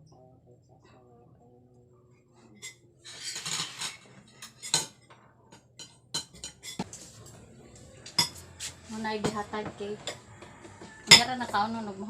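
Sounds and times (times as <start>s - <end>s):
cutlery clinking on plates: 2.6s - 7.0s, 8.1s - 11.6s.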